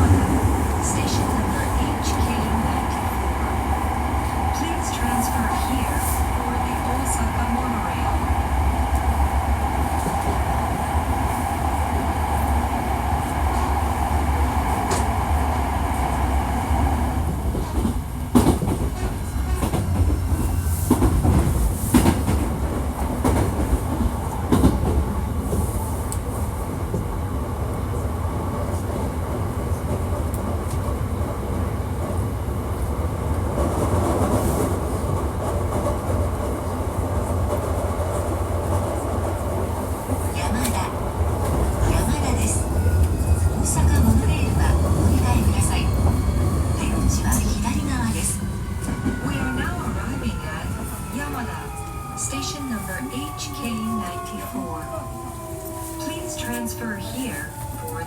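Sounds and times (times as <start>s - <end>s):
low train rumble: 0.0s - 58.0s
electric train drive whining: 40.6s - 58.0s.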